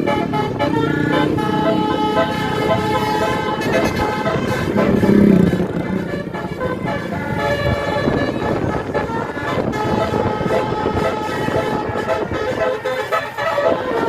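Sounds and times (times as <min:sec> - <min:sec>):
bus horn playing tones: 0:00.0 - 0:14.0
traffic rumble: 0:00.0 - 0:14.0.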